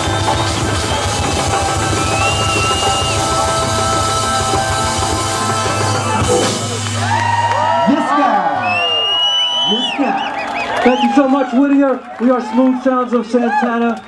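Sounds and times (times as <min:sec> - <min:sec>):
rock band playing: 0:00.0 - 0:08.2.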